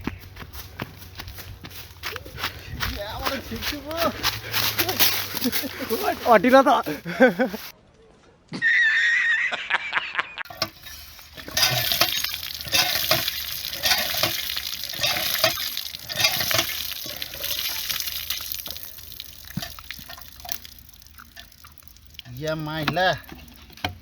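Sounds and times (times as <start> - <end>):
spatula scraping a pan: 10.5 - 21.6
food sizzling in a pan: 10.5 - 22.9.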